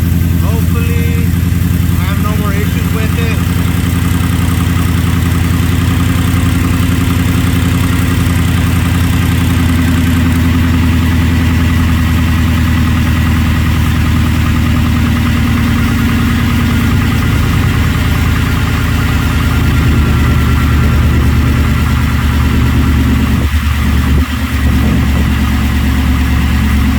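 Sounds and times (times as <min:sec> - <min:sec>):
car engine idling: 0:00.0 - 0:26.9.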